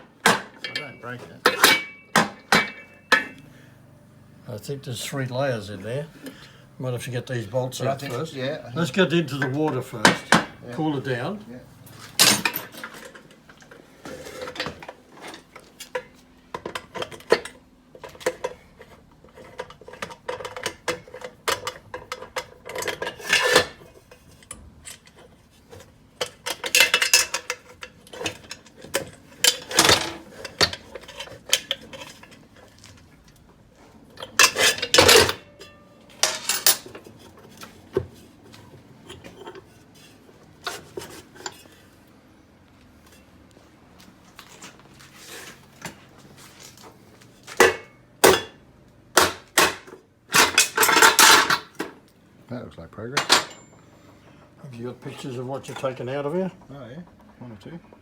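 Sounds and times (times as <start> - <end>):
metal parts and tools clinking: 0.2 - 3.4, 11.9 - 13.4, 19.3 - 33.0, 34.1 - 37.8, 49.2 - 51.9, 53.2 - 53.9.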